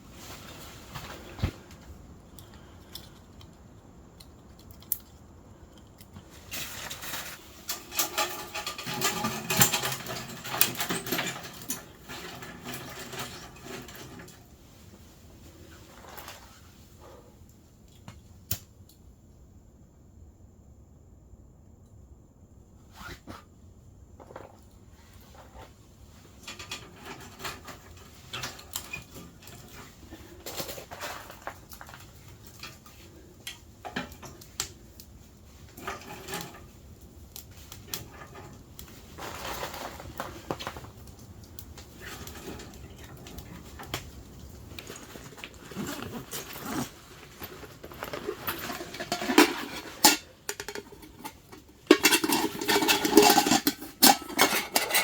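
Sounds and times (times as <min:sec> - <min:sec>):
cookware clattering: 0:48.6 - 0:55.0
metal cookware clinking: 0:48.6 - 0:55.0.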